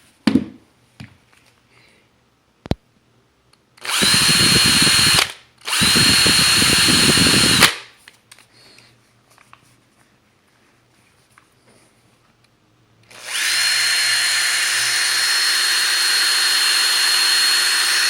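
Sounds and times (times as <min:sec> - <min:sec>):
cordless drill whining: 0:03.8 - 0:07.8, 0:13.0 - 0:18.0.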